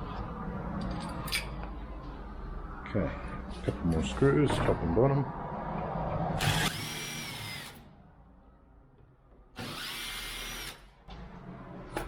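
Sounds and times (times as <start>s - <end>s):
power drill-driver whirring: 6.4s - 7.8s, 9.6s - 10.9s.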